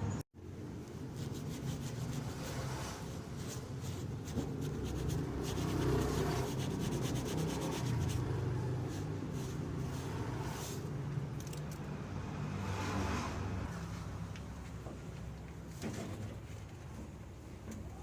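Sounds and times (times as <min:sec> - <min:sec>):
sandpaper rubbing on wood: 0:01.0 - 0:10.1.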